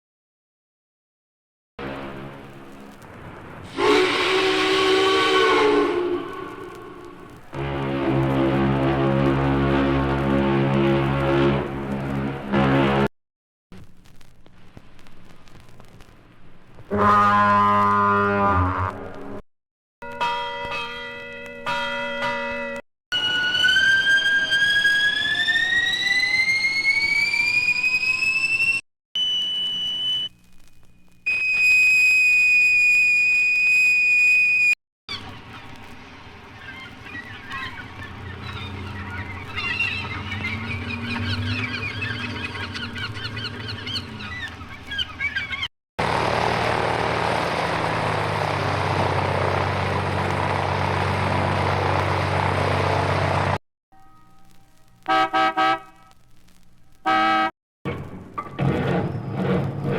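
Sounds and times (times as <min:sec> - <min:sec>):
ship's siren winding up: 0:23.1 - 0:30.3, 0:31.3 - 0:34.8
bosun's whistle high note: 0:31.3 - 0:34.8
sea gulls calling: 0:36.5 - 0:45.7
small plane engine drone: 0:46.0 - 0:53.6.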